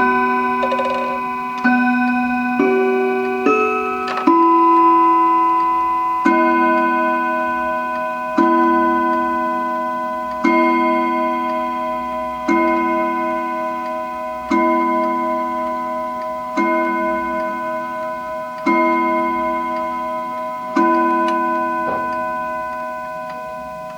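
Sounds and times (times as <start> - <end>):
clock ticking: 0.0 - 2.0
clock chime strokes: 0.0 - 23.9.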